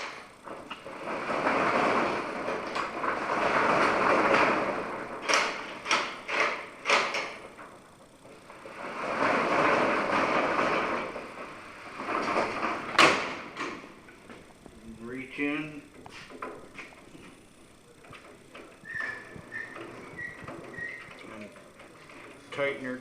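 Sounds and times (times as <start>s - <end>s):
metal door latch sliding: 0.0s - 7.6s, 9.2s - 14.0s.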